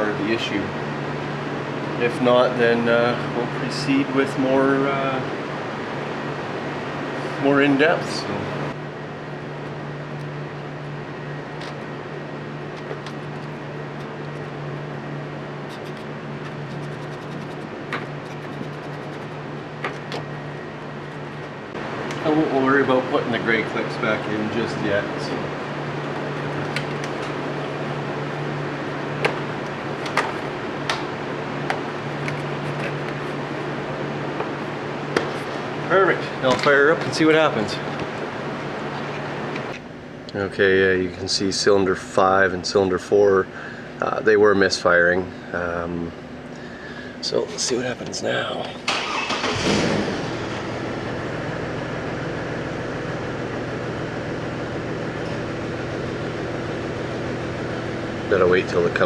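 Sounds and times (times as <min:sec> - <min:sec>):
steady low hum: 0:00.0 - 0:59.0
car engine idling: 0:46.6 - 0:59.0.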